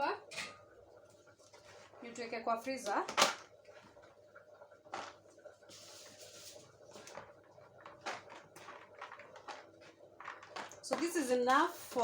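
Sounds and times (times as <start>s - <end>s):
soft rustle: 5.7s - 7.2s.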